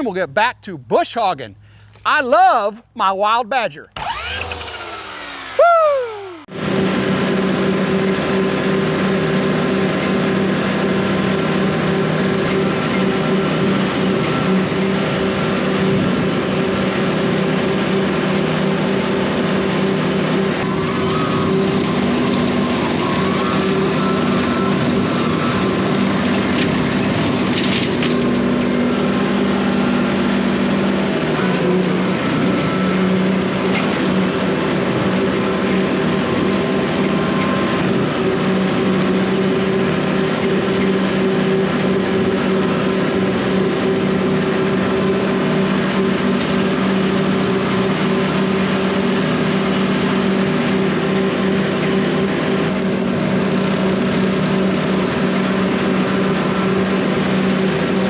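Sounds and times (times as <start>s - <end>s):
tractor diesel engine under load: 0.0s - 6.5s.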